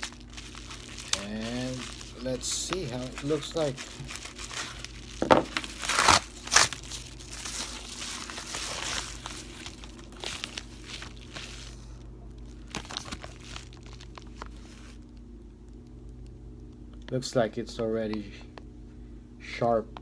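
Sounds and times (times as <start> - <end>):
packaging tearing: 0.0 - 15.2
packaging crinkling: 0.0 - 15.9.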